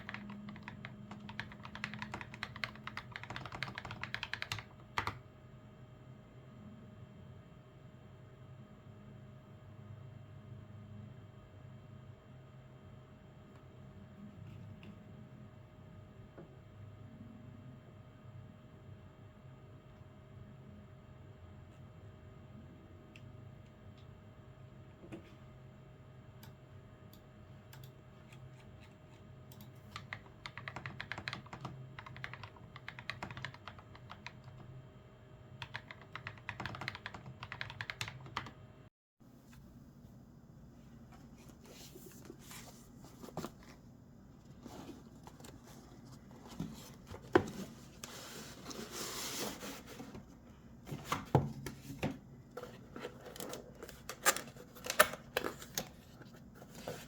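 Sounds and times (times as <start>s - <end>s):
mechanical keyboard typing: 0.0s - 5.2s, 29.6s - 34.6s, 35.6s - 38.6s.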